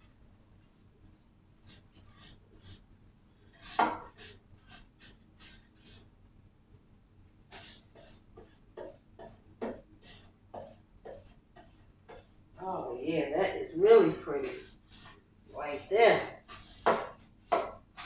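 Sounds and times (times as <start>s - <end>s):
paintbrush strokes on wood: 1.6s - 2.9s, 3.5s - 6.1s, 7.5s - 18.0s.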